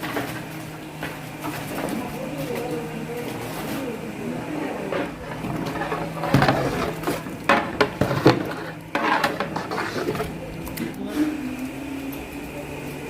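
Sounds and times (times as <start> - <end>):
low steady hum: 0.0 - 13.0
metal cookware clattering: 4.8 - 10.9.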